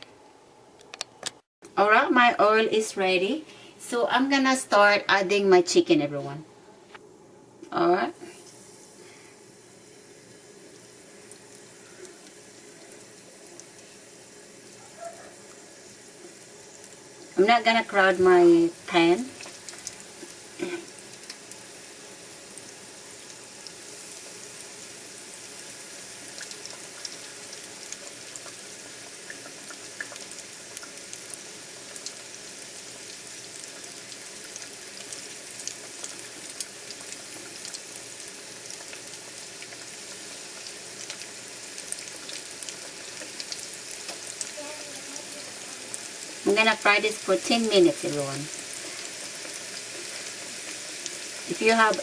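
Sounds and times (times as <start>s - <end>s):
chicken frying in oil: 8.2s - 52.0s
oil pops and crackles: 19.4s - 21.6s, 40.6s - 44.5s.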